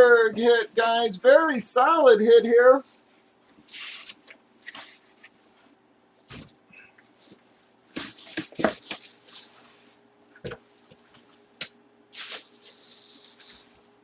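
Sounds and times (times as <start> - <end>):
packaging rustling and scraping: 2.8 - 14.0.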